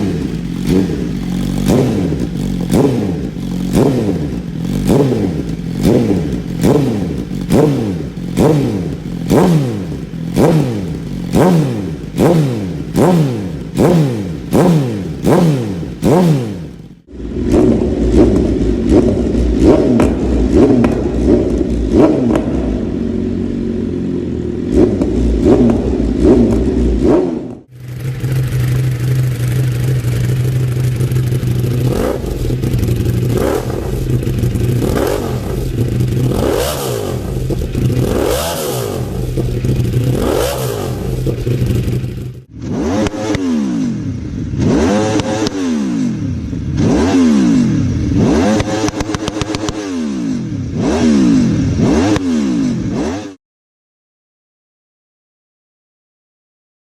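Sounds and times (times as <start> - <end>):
motorcycle idling: 0.0 - 42.5
motorcycle throttle blips: 0.0 - 53.2.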